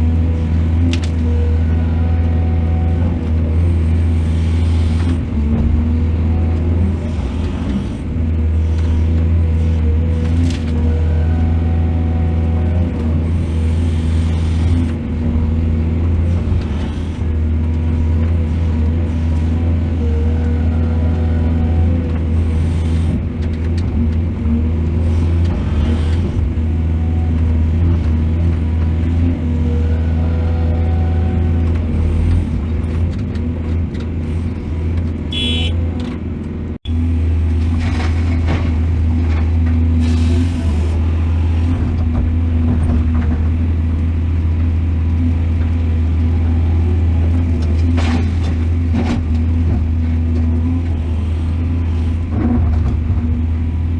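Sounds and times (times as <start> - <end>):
diesel engine drone: 0.0 - 53.9.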